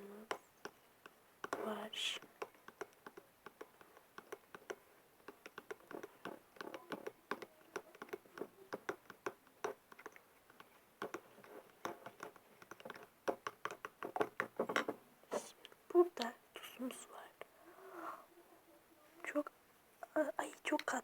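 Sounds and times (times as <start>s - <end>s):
liquid being stirred: 0.2s - 15.8s
utensil clicking against a dish: 0.3s - 1.6s, 2.2s - 15.0s.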